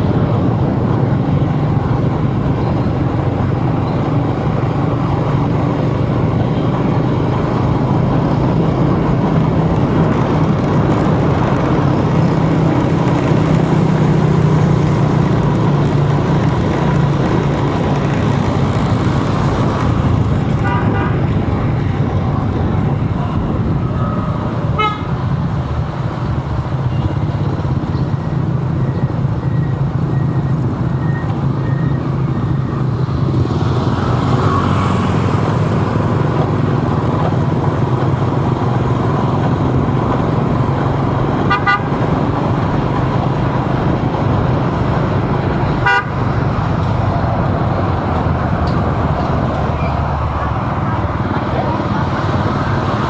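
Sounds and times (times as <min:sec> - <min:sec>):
engine and road noise: 0:00.0 - 0:53.0
car horn toots: 0:24.8 - 0:25.1, 0:41.5 - 0:41.9, 0:45.8 - 0:46.2.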